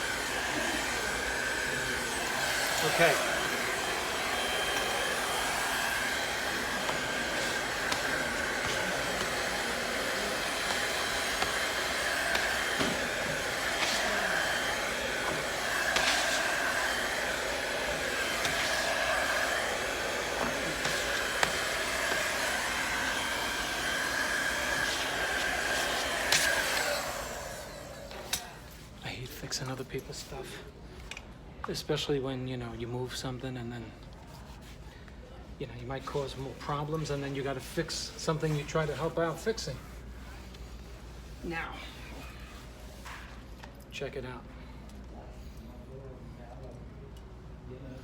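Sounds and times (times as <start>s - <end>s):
hot-air blower whine: 0.0s - 29.2s.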